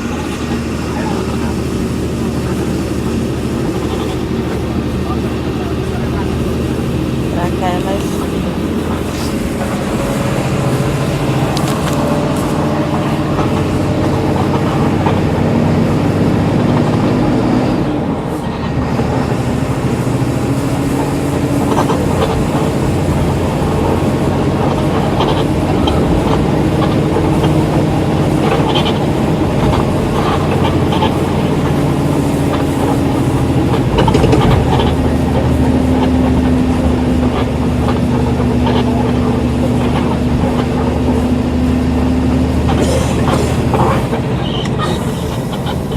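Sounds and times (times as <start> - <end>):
bus diesel engine pulling under load: 0.0 - 45.9.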